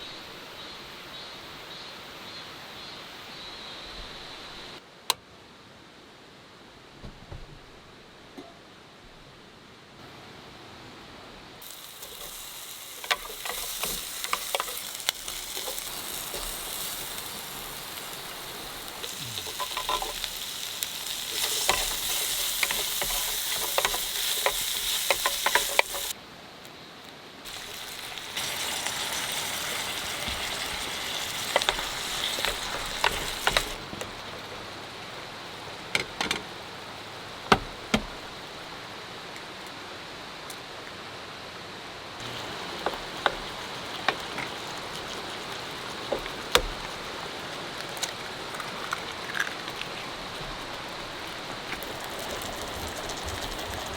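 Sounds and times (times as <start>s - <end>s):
food sizzling in a pan: 11.6s - 26.2s, 27.4s - 35.8s, 42.2s - 53.9s
utensil clicking against pan: 12.0s - 17.2s, 18.9s - 26.1s, 30.0s - 34.1s.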